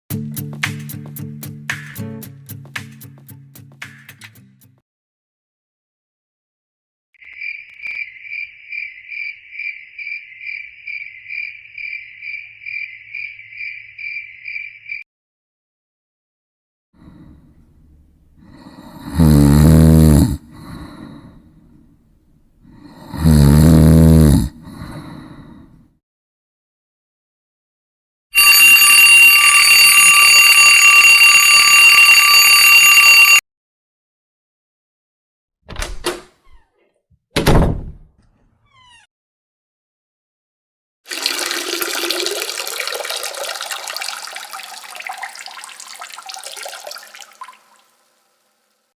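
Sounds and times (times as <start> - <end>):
cricket chirping: 7.2 - 15.0
alarm clock ringing: 28.4 - 33.4.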